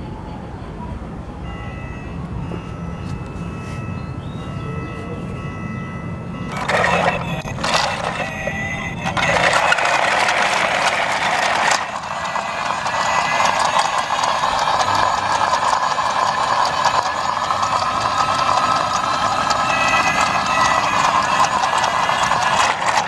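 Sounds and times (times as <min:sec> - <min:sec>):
toy train motor whining: 0:05.3 - 0:23.0
rasping clicking noise: 0:06.5 - 0:23.0.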